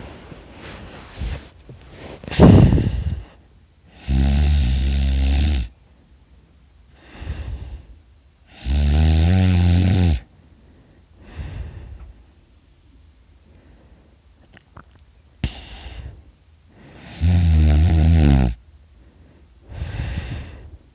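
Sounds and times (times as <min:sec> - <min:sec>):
man snoring loudly: 0:03.9 - 0:05.7, 0:08.5 - 0:10.3, 0:17.0 - 0:18.6.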